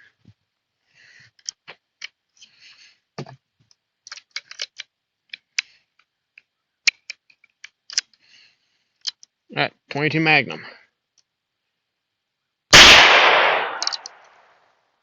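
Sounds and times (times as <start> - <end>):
revolver metallic clicks and rattles: 13.7 - 14.4.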